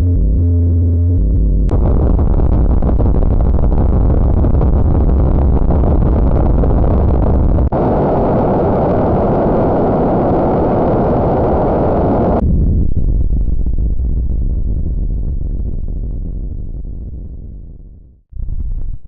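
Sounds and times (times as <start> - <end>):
harsh distorted jumpscare noise: 1.3 - 8.8.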